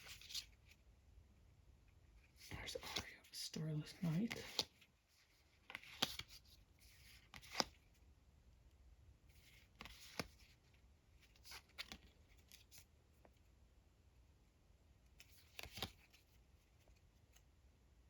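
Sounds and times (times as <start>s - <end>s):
trading cards rustling and tapping: 2.5s - 4.9s, 5.6s - 7.9s, 9.4s - 10.6s, 15.2s - 16.3s.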